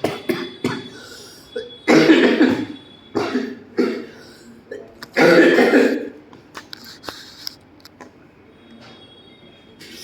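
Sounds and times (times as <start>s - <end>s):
man coughing: 0.0s - 6.2s.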